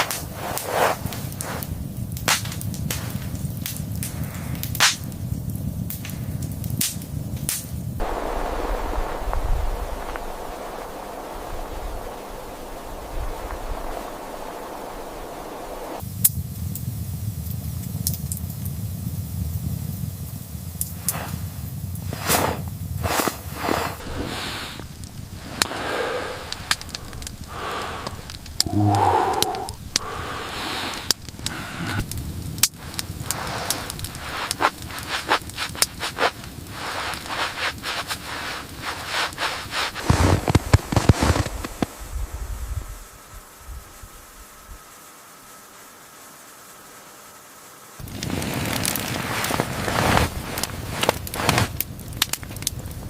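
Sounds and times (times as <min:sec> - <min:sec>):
rubbing and scraping strokes: 0:00.0 - 0:01.7, 0:22.2 - 0:25.8, 0:33.2 - 0:41.8
hissing: 0:00.0 - 0:01.9, 0:08.0 - 0:16.0, 0:22.2 - 0:41.9
sharp crackles: 0:00.0 - 0:16.9, 0:20.6 - 0:45.2, 0:47.9 - 0:53.0.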